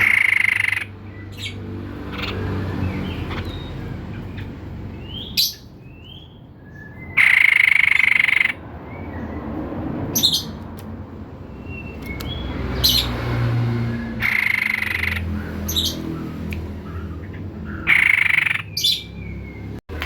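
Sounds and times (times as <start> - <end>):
bird buzzy trill: 0.0 - 3.8, 7.2 - 8.6, 11.8 - 19.6.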